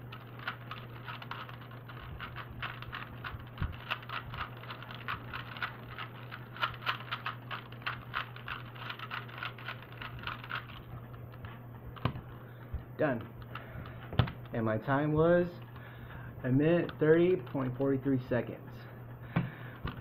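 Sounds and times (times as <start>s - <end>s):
puzzle cube plastic clicks: 0.0s - 10.9s.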